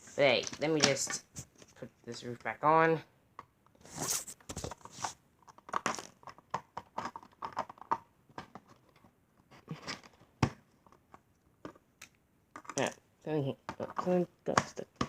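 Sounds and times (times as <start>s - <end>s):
plastic pieces clicking: 5.4s - 8.6s.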